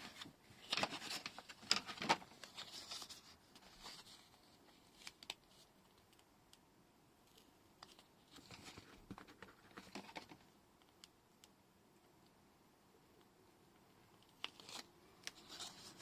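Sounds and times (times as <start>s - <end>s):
paper rustling and scraping: 0.0s - 5.6s, 14.5s - 16.0s.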